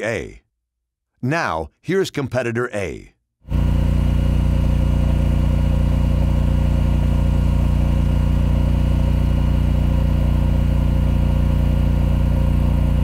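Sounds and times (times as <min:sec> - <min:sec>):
generator engine drone: 0:03.5 - 0:13.0.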